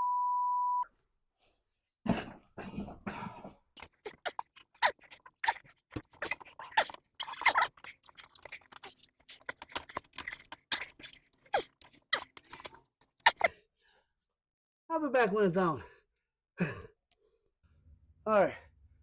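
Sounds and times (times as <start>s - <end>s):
rubbery tire squeaks: 3.8s - 13.5s.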